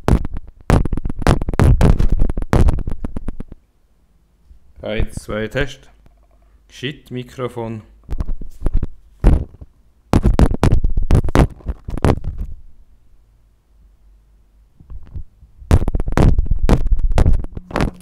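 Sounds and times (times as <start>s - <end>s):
microphone handling clatter: 0.0s - 3.6s, 8.0s - 12.6s, 14.8s - 18.0s.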